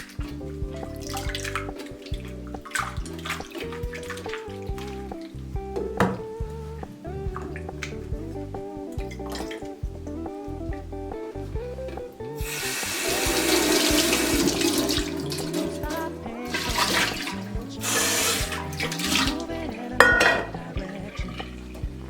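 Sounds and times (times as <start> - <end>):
background music: 0.0 - 22.0
tap water running into sink: 12.4 - 21.9.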